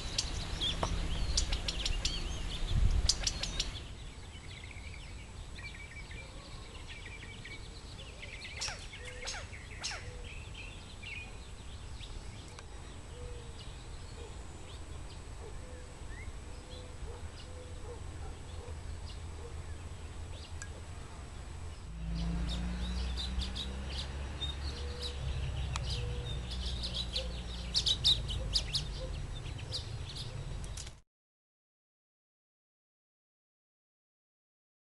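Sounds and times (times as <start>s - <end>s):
quails calling: 0.0s - 2.3s, 3.0s - 3.8s, 8.6s - 10.3s.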